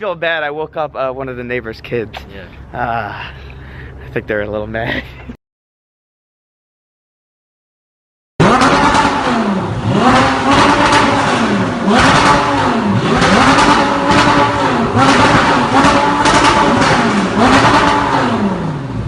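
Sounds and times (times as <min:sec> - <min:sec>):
sports car engine revving: 0:08.4 - 0:19.0.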